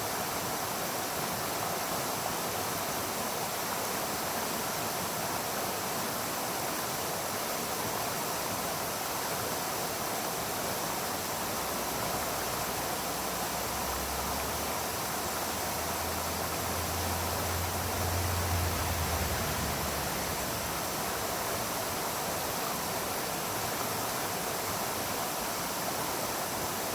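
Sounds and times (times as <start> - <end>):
brook babbling over rocks: 9.0 - 26.9.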